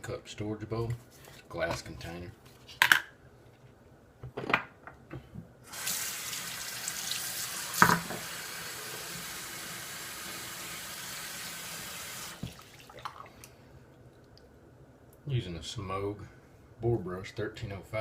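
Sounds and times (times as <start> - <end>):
tap water running into sink: 5.7 - 13.3.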